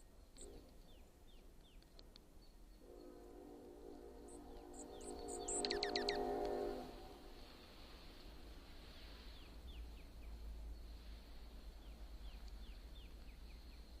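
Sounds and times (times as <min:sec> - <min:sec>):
low outdoor rumble: 0:00.0 - 0:14.0
small songbird calling: 0:04.2 - 0:06.4, 0:09.2 - 0:14.0.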